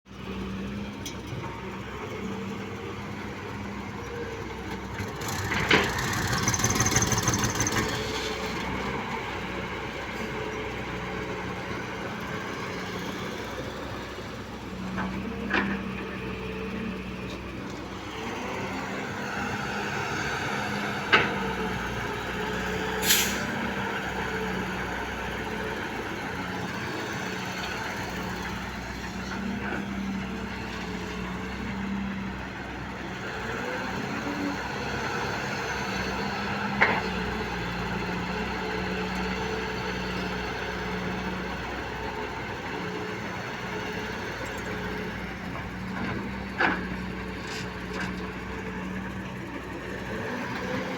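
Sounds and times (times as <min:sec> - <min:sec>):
diesel engine running: 0:00.1 - 0:50.9
brief hiss: 0:23.0 - 0:23.5.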